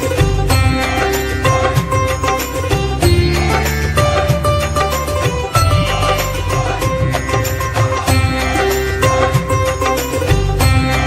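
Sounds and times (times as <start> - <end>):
film music with steady beat: 0.0 - 11.0.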